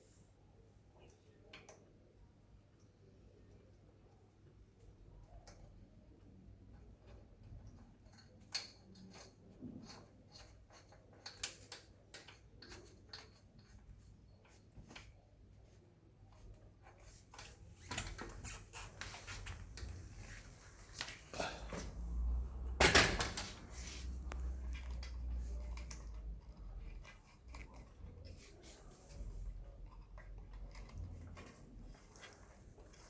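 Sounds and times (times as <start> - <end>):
faint clicks and taps: 23.7 - 33.0.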